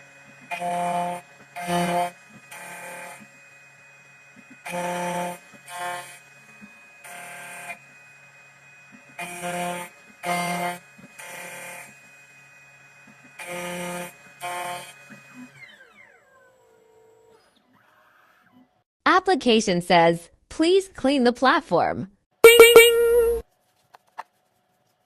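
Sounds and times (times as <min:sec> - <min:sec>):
short motor buzzing: 0:00.0 - 0:03.6.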